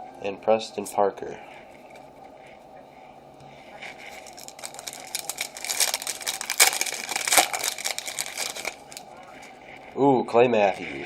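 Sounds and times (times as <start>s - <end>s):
foil wrapper crinkling: 4.0s - 9.1s.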